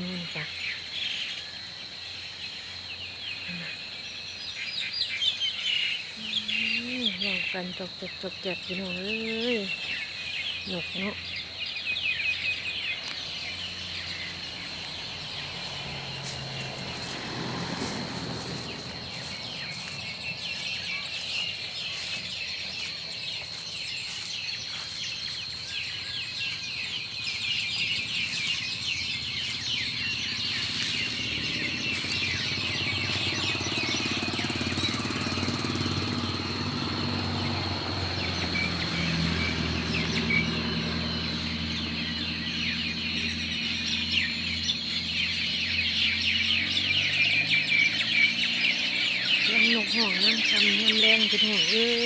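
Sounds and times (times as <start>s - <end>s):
birds chirping and chattering: 0.0s - 52.0s
low motor hum: 13.0s - 45.3s.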